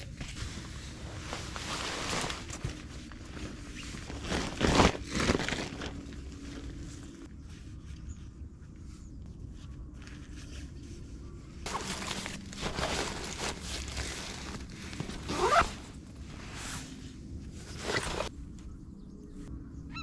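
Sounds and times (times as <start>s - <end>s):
zipper rasping: 11.7s - 16.9s, 17.7s - 18.3s.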